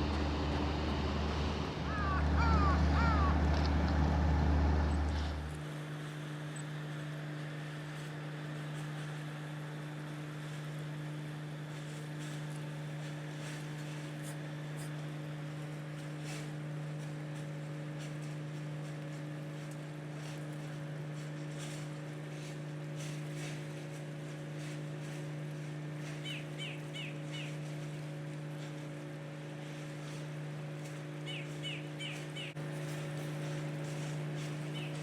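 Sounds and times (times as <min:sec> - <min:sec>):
low ship machinery hum: 0:00.0 - 0:35.0
bird chirps: 0:31.3 - 0:32.6.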